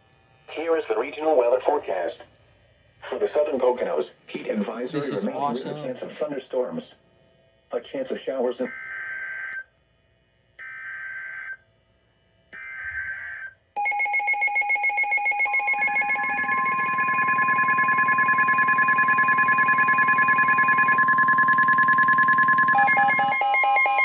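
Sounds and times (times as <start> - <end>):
pulsing electronic alarm: 8.7 - 9.6, 10.6 - 11.6, 12.6 - 24.0
steady warning alarm tone: 12.6 - 24.0.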